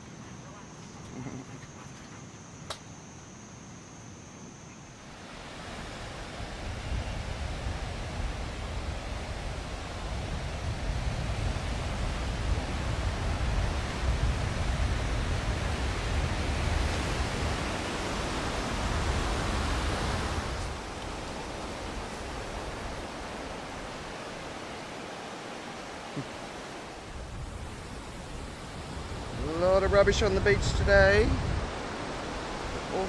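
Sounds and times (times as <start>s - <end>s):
surf washing onto beach: 5.1s - 33.0s
wind rumbling on microphone: 5.3s - 33.0s.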